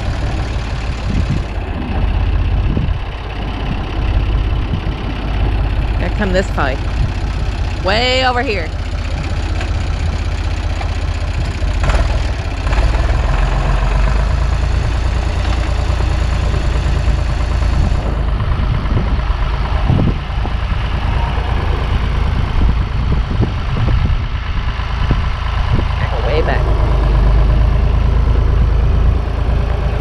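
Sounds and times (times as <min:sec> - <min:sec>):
farm vehicle engine idling: 0:00.0 - 0:30.0.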